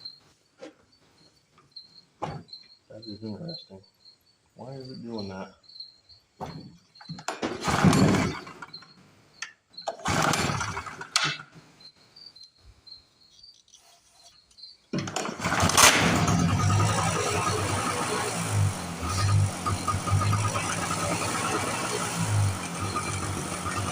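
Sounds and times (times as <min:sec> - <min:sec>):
crickets chirping: 0:00.0 - 0:09.9, 0:10.8 - 0:15.0
small generator engine starting: 0:07.4 - 0:09.0, 0:09.8 - 0:11.8, 0:15.0 - 0:23.9.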